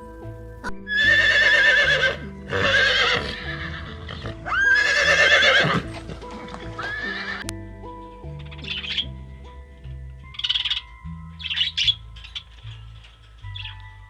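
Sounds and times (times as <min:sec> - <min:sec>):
background music: 0:00.0 - 0:14.0
wavering animal calls: 0:00.9 - 0:07.5, 0:10.3 - 0:12.6.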